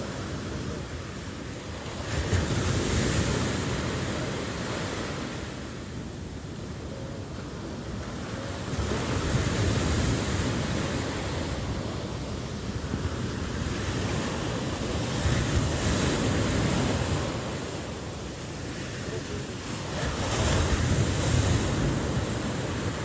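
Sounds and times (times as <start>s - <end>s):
ocean waves breaking on shore: 0.0s - 23.0s.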